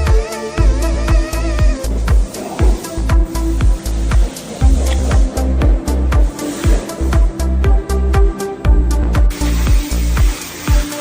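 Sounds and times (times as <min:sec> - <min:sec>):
sustained bass line: 0:00.0 - 0:10.3
kick drum beat: 0:01.1 - 0:09.8.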